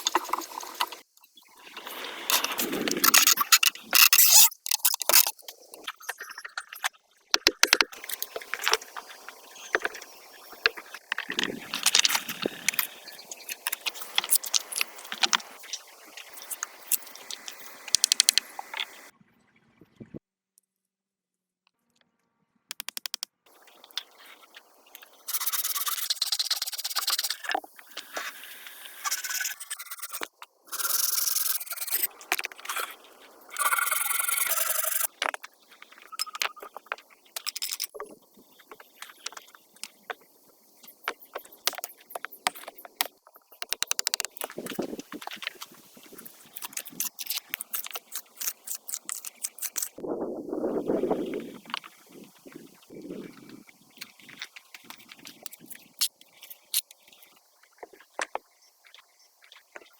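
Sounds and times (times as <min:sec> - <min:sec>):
scraping and rubbing: 0:01.7 - 0:05.9, 0:43.7 - 0:50.0
scattered clicks: 0:10.6 - 0:19.0, 0:22.7 - 0:23.3, 0:41.1 - 0:45.4.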